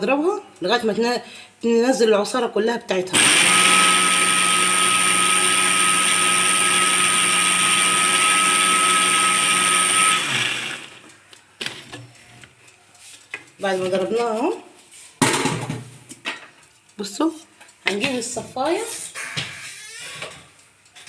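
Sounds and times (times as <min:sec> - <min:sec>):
motor spinning down: 0:03.2 - 0:11.0
blender motor whining: 0:03.2 - 0:11.1.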